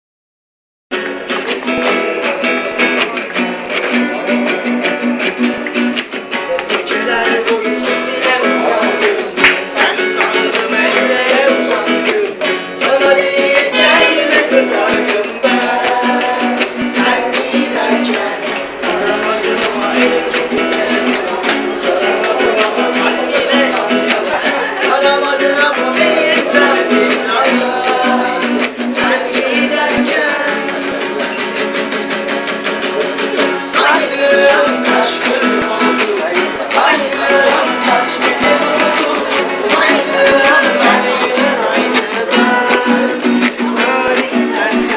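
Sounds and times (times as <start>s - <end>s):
plucked string instruments: 0.9s - 44.9s
school band playing: 29.9s - 44.9s.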